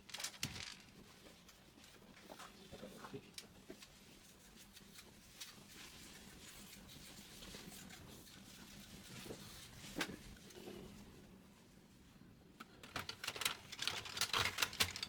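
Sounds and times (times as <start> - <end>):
faint clicks and rustles: 0.0 - 15.0.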